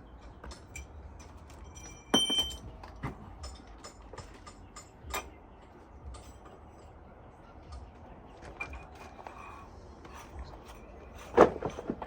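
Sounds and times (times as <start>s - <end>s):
metal tools clinking: 0.2s - 7.0s
loud ringing metal clink: 0.5s - 2.7s.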